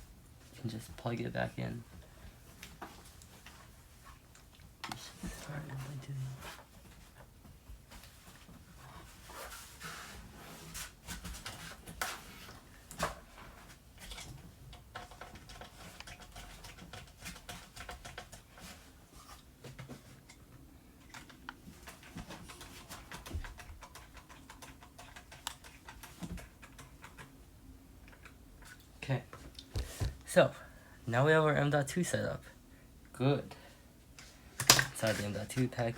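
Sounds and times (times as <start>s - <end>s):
small clicks and taps: 21.0s - 27.4s.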